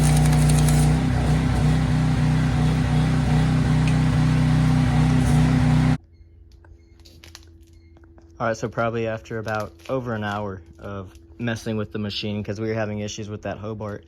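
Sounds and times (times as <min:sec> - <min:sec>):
welder engine running: 0:00.0 - 0:06.0
welding arc hissing: 0:00.0 - 0:06.0.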